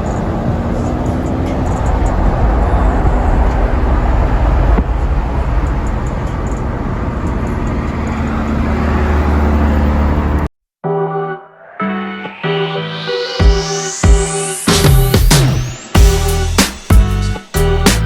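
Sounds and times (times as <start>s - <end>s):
car engine running: 0.0s - 10.5s
road noise: 0.0s - 10.5s.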